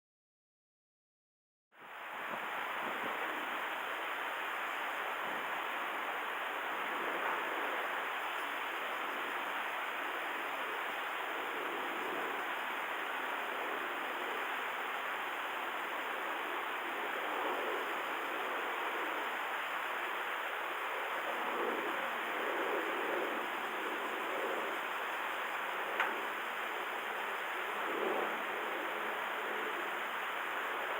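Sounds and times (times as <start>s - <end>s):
water rushing: 1.9s - 22.5s, 23.2s - 30.9s.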